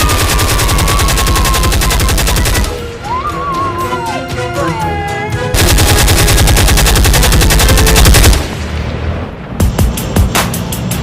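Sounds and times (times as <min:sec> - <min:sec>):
rapid automatic gunfire: 0:00.0 - 0:02.8, 0:05.6 - 0:08.5.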